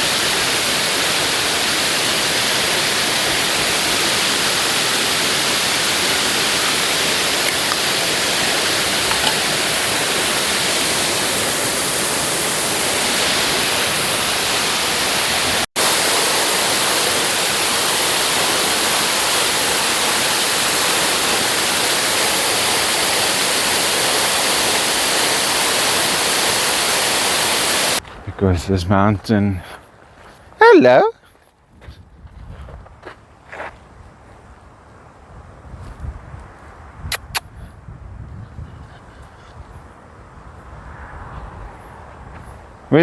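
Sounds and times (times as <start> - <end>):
water rushing: 0.0 - 28.0.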